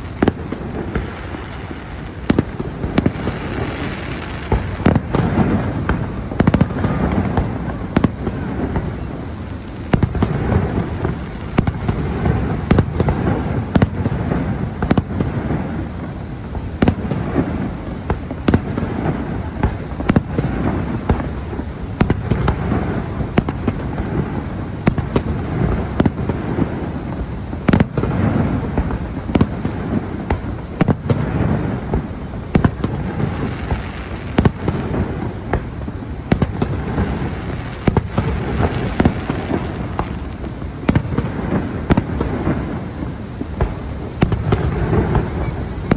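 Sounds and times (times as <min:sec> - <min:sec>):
continuous low rumble: 0:00.0 - 0:45.9
fireworks bangs and crackles: 0:00.0 - 0:45.9.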